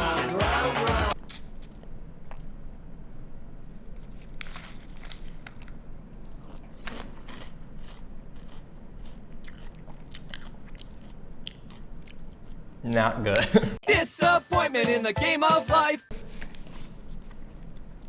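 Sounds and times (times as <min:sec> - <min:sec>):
person chewing crunchy cereal: 0:04.0 - 0:12.6.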